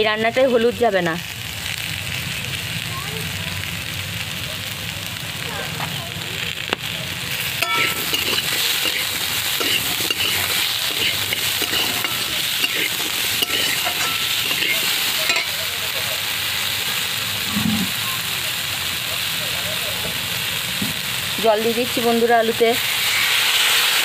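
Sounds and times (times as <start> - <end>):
potatoes and onions sizzling in oil: 0.0 - 24.0
spatula clinking against pan: 7.6 - 15.7.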